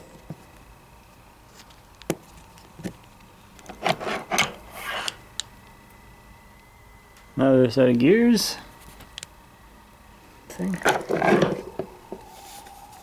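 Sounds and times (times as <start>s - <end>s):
metal parts scraping: 3.7s - 5.2s, 10.8s - 11.8s.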